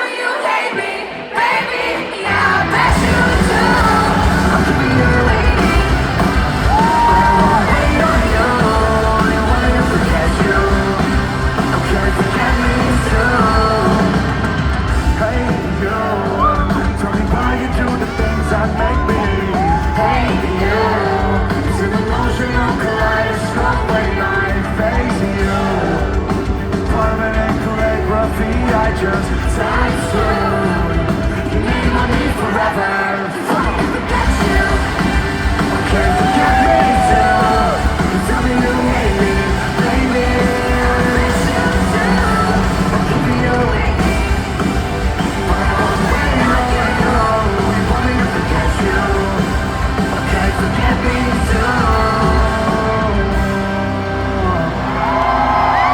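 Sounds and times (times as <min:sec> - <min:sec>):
audience yelling along: 0:00.0 - 0:55.9
live rock band with singing: 0:00.0 - 0:55.9.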